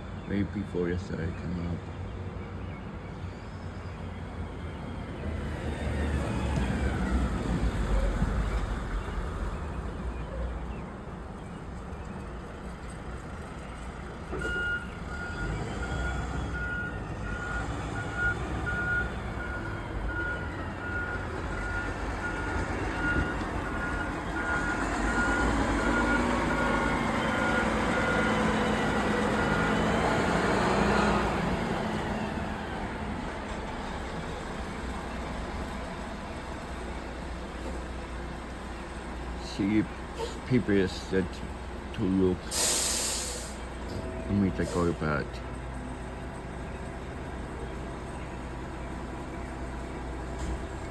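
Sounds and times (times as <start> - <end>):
engine and traffic rumble: 0.0 - 50.9
vehicle reversing alarm beeping: 2.2 - 37.1, 38.8 - 50.9.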